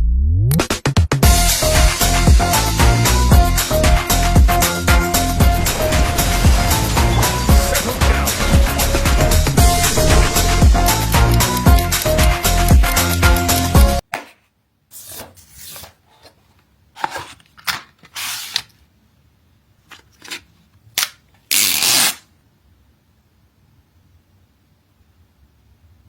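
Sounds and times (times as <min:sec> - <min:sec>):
rustles and clicks of box handling: 0:15.9 - 0:18.6.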